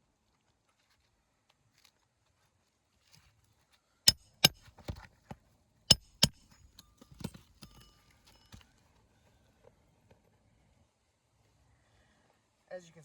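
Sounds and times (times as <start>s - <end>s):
hammer striking nails: 4.1s - 5.0s, 5.9s - 6.6s.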